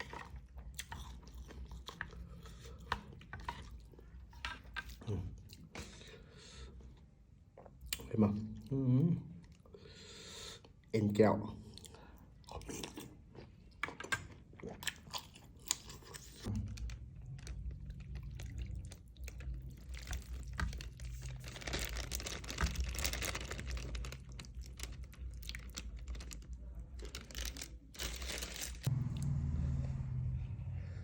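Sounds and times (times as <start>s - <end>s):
chewing and crunching: 0.0s - 6.2s, 11.6s - 29.3s
steady low hum: 28.9s - 31.0s.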